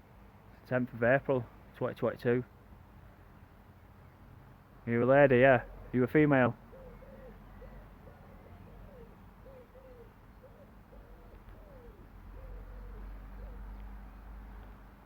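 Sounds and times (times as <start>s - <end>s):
bird cooing: 6.6s - 14.2s.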